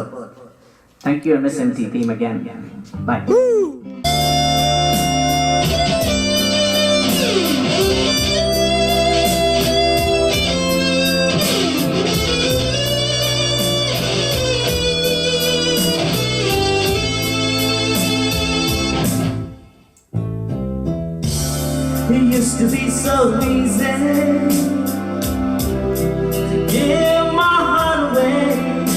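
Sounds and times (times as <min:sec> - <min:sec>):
electric guitar instrumental music: 0:04.3 - 0:19.5.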